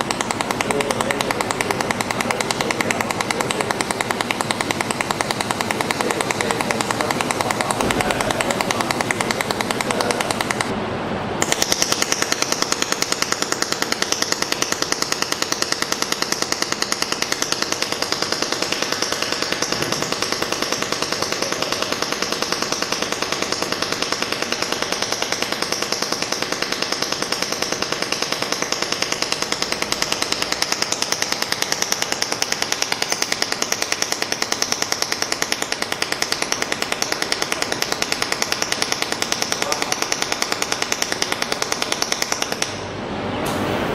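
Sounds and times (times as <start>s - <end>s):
welding machine crackling buzz: 0.0s - 10.7s, 11.4s - 42.8s.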